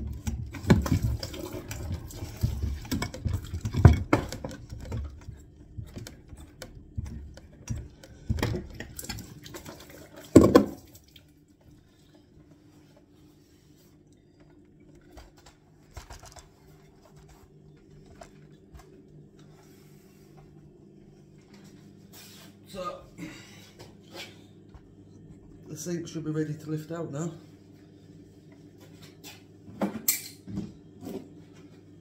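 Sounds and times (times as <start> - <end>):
knocks and clatters on sink fittings: 0.1 - 9.2.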